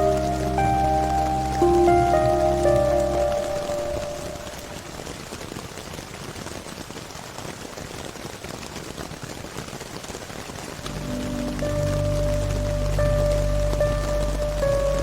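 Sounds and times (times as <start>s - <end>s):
slowed reverberant ambient music: 0.0s - 5.0s, 10.8s - 15.0s
rain pattering: 0.0s - 15.0s.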